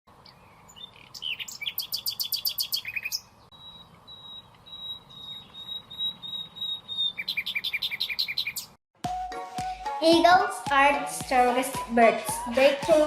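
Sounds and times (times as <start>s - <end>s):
songbird singing: 0.1s - 8.8s.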